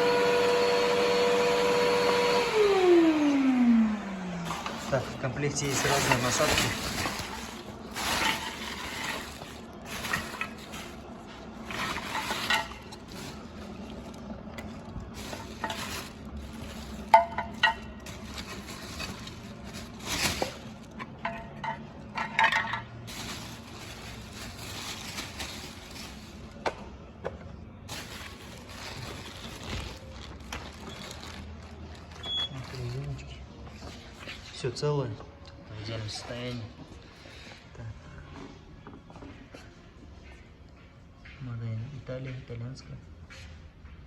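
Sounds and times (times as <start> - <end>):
plastic parts clattering: 4.5 - 26.7.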